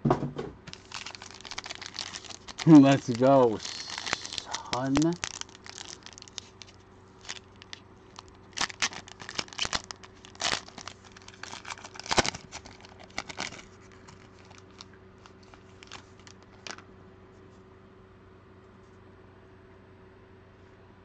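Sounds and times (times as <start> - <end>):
plastic wrapping crinkling: 0.7 - 16.8.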